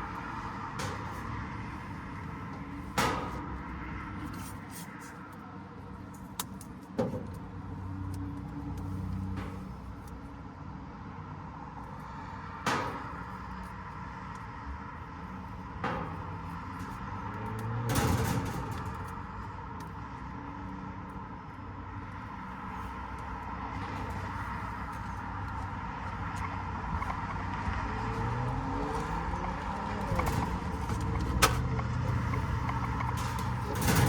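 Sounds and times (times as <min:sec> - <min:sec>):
steady mechanical drone: 0:13.8 - 0:34.0.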